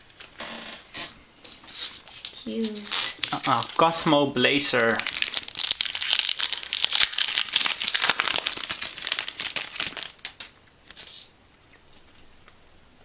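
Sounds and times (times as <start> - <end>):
foil wrapper crinkling: 1.5 - 11.3.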